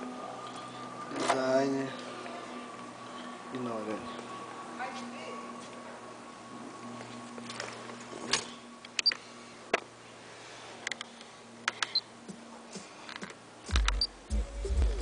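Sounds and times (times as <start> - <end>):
pulsing subwoofer bass: 13.7 - 15.0.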